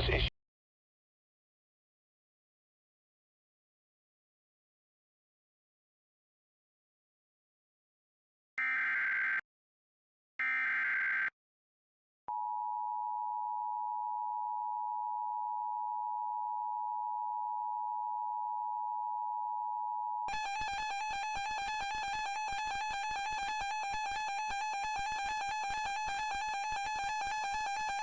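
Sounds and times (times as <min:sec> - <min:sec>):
buzzing digital data tones: 0:20.3 - 0:28.0
electronic keyboard music: 0:20.3 - 0:28.0.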